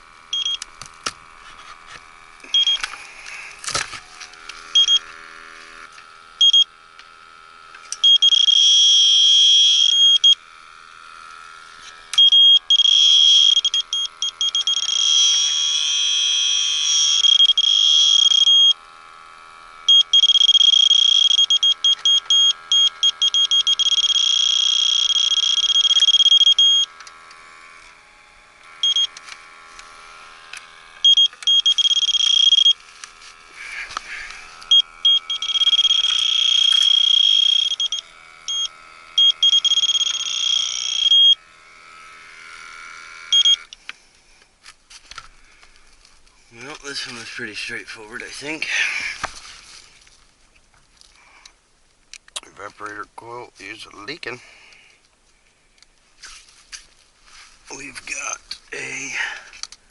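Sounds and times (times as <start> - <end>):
leak detector high tone: 0.0 - 28.0, 28.6 - 43.8
leak detector rapid beeping: 0.3 - 0.8, 2.4 - 3.8, 4.6 - 5.3, 6.4 - 6.8, 7.9 - 10.5, 12.1 - 18.9, 19.8 - 27.0, 28.8 - 29.3, 31.0 - 32.9, 33.5 - 41.5, 43.3 - 43.8.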